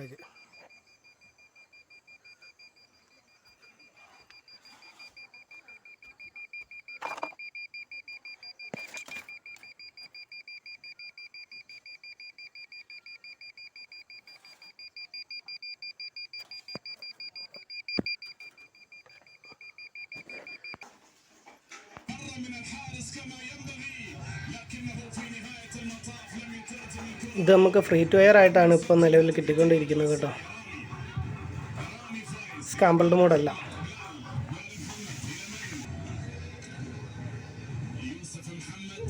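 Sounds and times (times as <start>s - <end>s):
music: 22.1s - 27.8s, 30.3s - 32.7s, 33.5s - 39.0s
fast high beeps: 24.3s - 35.9s.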